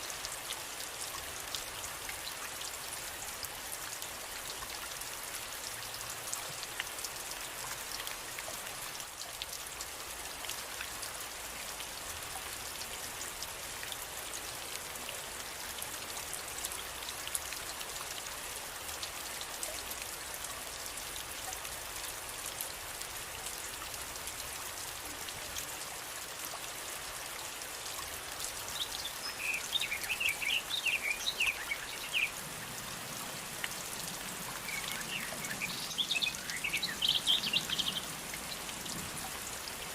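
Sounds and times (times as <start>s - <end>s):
steady rain falling: 0.0s - 39.9s
bird chirping: 34.6s - 38.1s.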